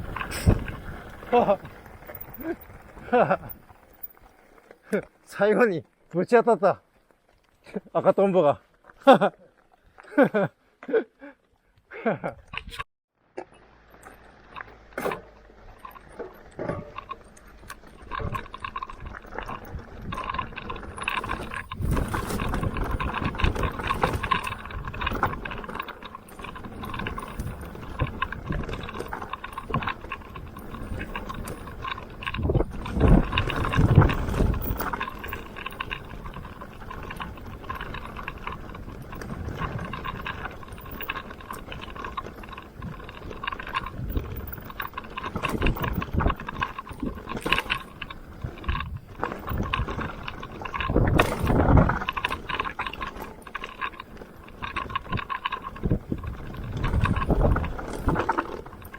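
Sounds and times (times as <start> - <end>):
bike chain and parts rattling: 0.0 - 6.2, 13.6 - 58.9
tyre and wind noise: 0.0 - 10.5, 12.0 - 12.8, 13.5 - 58.9.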